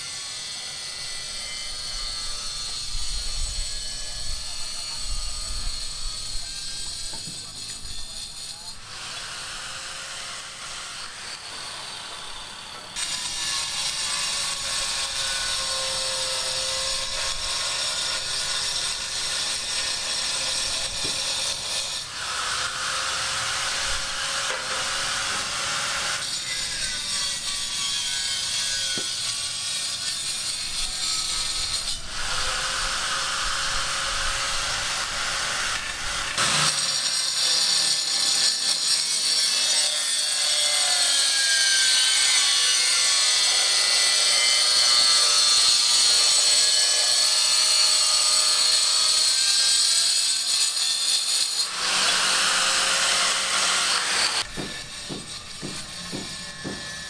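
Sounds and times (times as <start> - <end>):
tool rasping: 5.3 - 32.6, 35.7 - 57.0.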